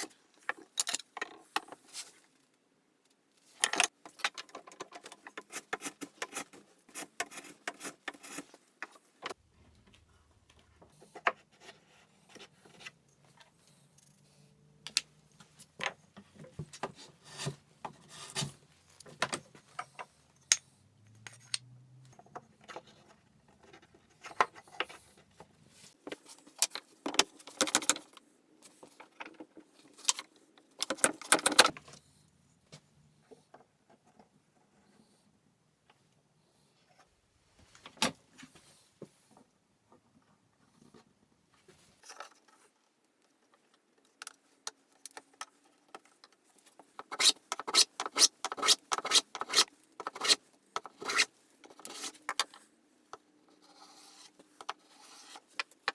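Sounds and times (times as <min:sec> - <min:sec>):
tool scraping wood: 0:47.0 - 0:52.4.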